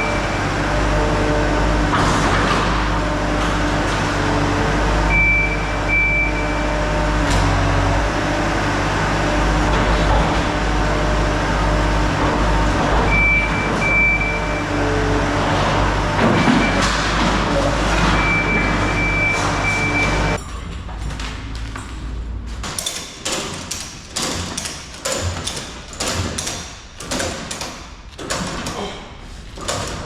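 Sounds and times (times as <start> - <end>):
skid steer engine running: 0.0 - 22.6.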